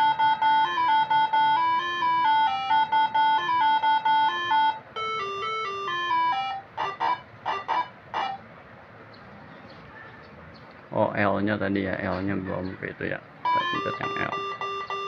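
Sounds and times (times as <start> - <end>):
electronic melody horn: 0.0 - 8.4, 13.5 - 15.0.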